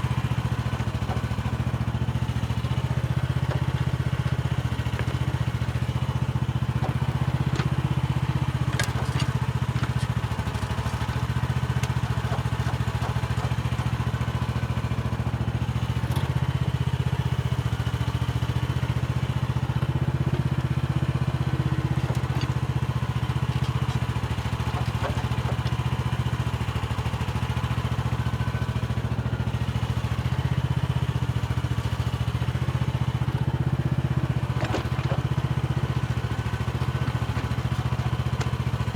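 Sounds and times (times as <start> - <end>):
bucket clicking and clattering in soil: 0.0 - 38.9
mini excavator engine running: 0.0 - 38.9.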